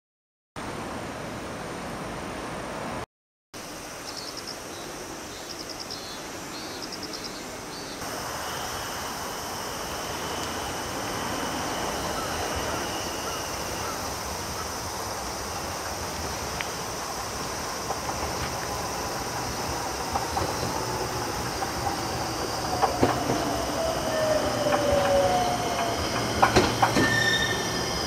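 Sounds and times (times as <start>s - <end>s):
steady outdoor noise: 0.6s - 3.0s, 3.6s - 28.0s
insects chirping: 3.6s - 28.0s
electric railcar steady noise: 6.9s - 28.0s
sharp clicks of train moving off: 9.9s - 13.8s, 16.6s - 28.0s.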